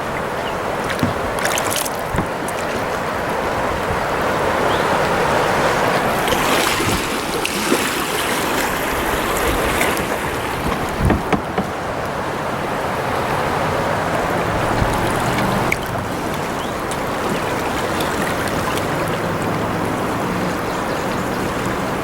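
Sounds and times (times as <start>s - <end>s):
river water rushing: 0.0s - 22.0s
dull knocks: 0.9s - 2.6s, 9.6s - 12.1s, 14.2s - 16.1s.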